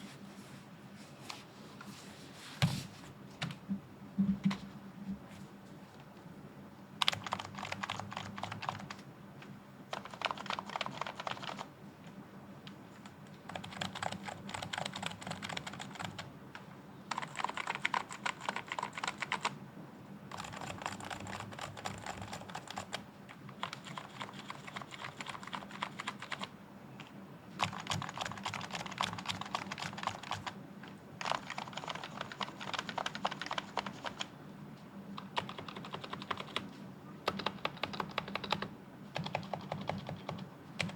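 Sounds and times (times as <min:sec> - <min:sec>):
typing on keyboard: 0:07.0 - 0:09.0, 0:09.9 - 0:11.7, 0:13.0 - 0:19.6, 0:20.3 - 0:30.6, 0:31.2 - 0:34.3, 0:35.2 - 0:40.9.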